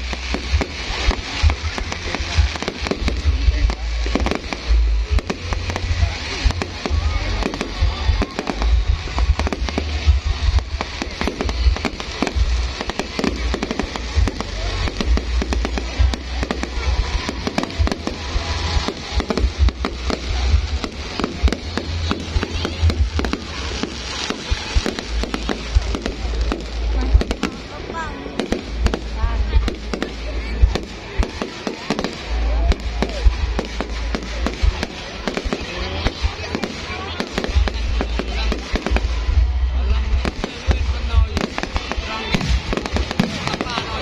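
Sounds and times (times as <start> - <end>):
deep steady rumble: 0.0 - 31.2
fireworks bangs and crackles: 0.0 - 44.0.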